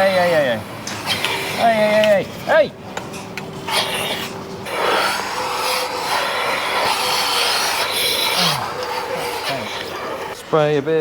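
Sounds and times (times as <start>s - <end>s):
milking equipment hissing: 3.7s - 10.4s.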